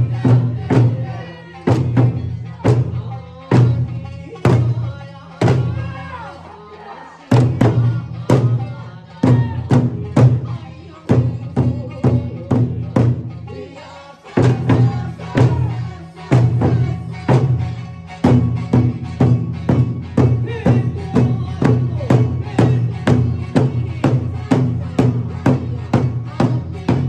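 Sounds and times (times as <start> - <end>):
taiko drums struck in unison: 0.0 - 4.8, 7.3 - 8.6, 14.4 - 17.6, 18.2 - 27.0
folk song singing: 0.0 - 27.0.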